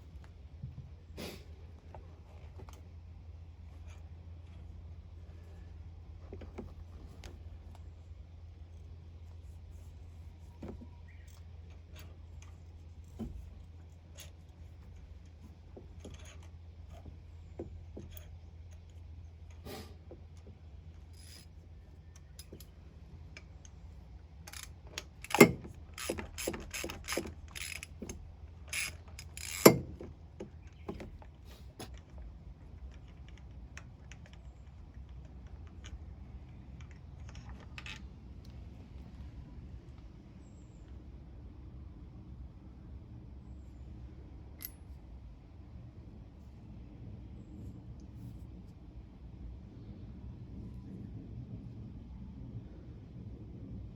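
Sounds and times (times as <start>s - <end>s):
metallic tool clicks and clinks: 24.5s - 29.8s
ratchet wrench clicking: 24.5s - 30.0s.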